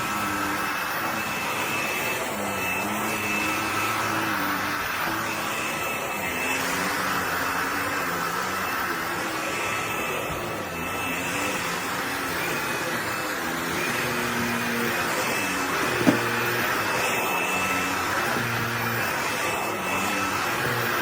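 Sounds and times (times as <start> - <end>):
stick vacuum running: 9.5 - 20.9.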